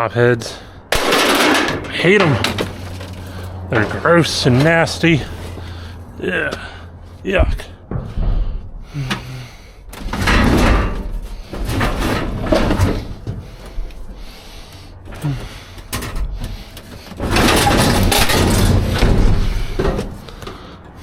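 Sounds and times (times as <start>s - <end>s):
debris scraping and knocking: 1.1s - 5.6s, 9.9s - 13.7s, 15.2s - 20.6s.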